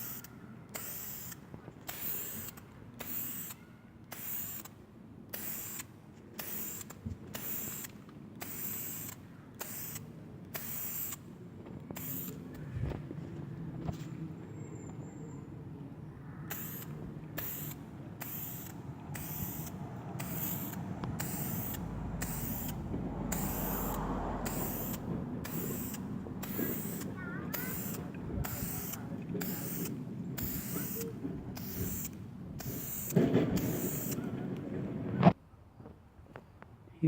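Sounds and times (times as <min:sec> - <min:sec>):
spray can hissing in spurts: 0:00.0 - 0:11.3, 0:11.9 - 0:12.5, 0:16.5 - 0:34.2
low rumble: 0:20.8 - 0:26.5.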